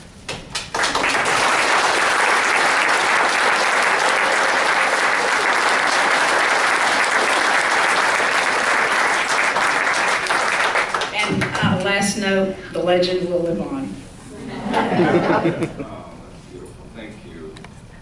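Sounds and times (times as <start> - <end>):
audience applauding: 0.5 - 11.8.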